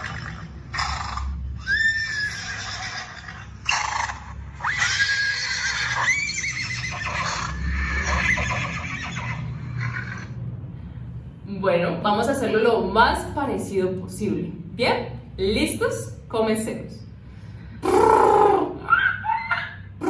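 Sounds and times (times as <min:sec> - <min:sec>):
horse whinnying: 0:00.8 - 0:10.3.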